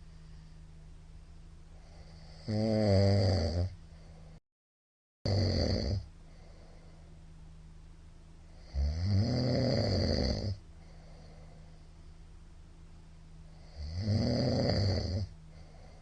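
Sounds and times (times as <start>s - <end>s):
faint steady hum: 0.0s - 4.4s, 5.3s - 16.0s
man snoring loudly: 1.8s - 3.8s, 5.3s - 6.1s, 8.5s - 11.4s, 13.5s - 16.0s.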